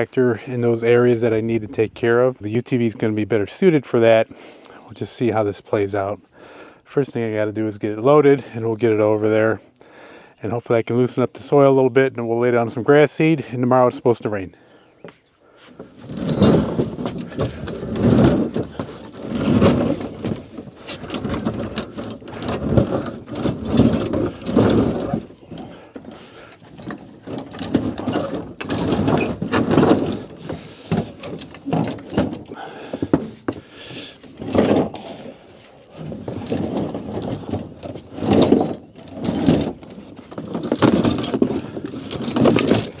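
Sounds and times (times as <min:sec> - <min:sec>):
steel harrow rattling and clanking: 0:16.0 - 0:43.0.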